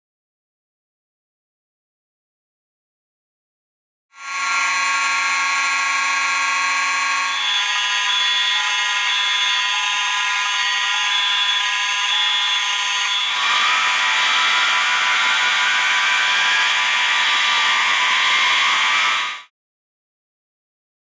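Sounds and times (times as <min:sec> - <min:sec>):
fire alarm horns: 0:04.2 - 0:19.3.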